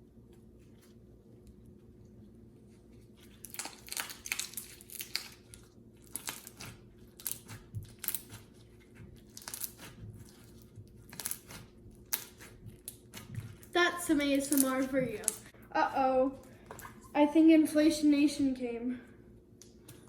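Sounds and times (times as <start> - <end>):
crunchy slime crackling: 3.1 - 15.5.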